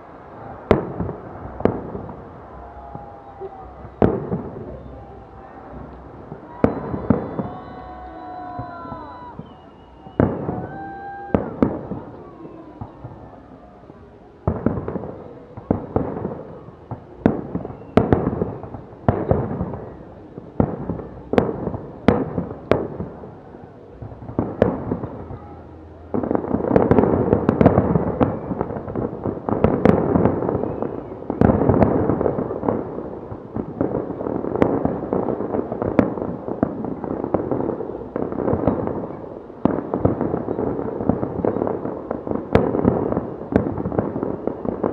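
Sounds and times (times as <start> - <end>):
fireworks crackle: 0.0 - 44.9.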